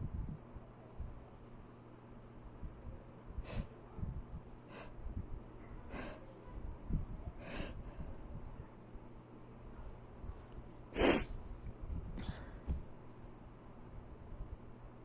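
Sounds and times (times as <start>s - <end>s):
short sharp sniffs: 11.0s - 11.3s.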